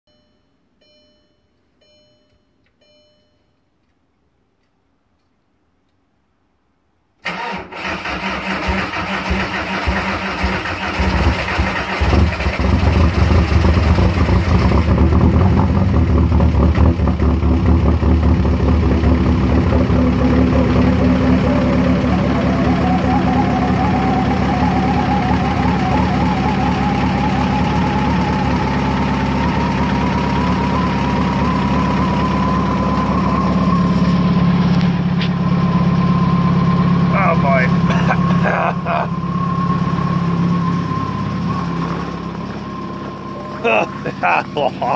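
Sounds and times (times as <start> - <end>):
soft chime tones: 0.1 - 4.0
diesel engine starting and idling: 7.2 - 44.9
faint rising tone: 18.4 - 37.4, 38.8 - 44.2.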